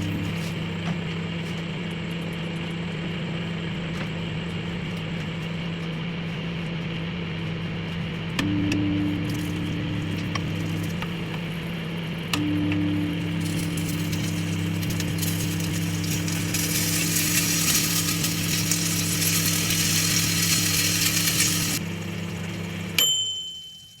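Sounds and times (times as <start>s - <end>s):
food crackling and sizzling: 0.0s - 1.1s, 8.9s - 23.0s
microwave oven humming: 0.0s - 24.0s
microwave click: 8.4s - 21.5s.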